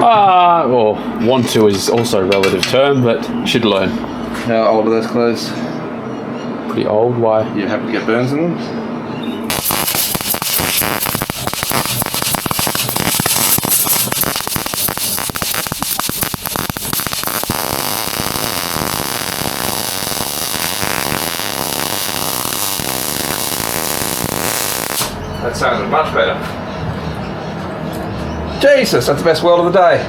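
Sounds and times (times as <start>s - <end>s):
welder crackling and sizzling: 9.5s - 25.2s.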